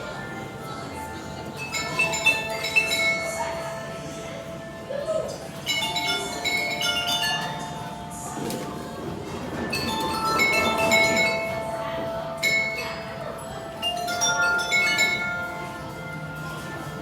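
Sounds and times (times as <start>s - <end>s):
bell-like chiming notes: 1.6s - 4.5s, 5.6s - 8.6s, 9.7s - 17.0s.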